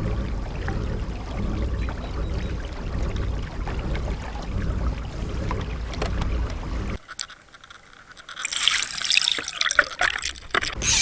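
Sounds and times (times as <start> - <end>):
low rumbling noise: 0.0 - 7.0
small crackles and ticks: 0.0 - 11.0
water trickling and bubbling: 0.0 - 11.0.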